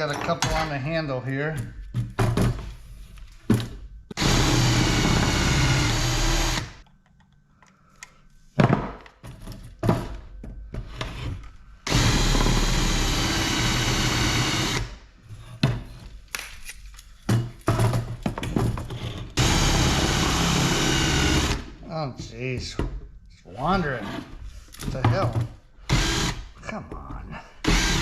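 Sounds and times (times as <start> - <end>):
power drill drilling metal: 4.2 - 6.8, 11.9 - 15.0, 19.4 - 21.7, 25.9 - 26.5, 27.6 - 28.0.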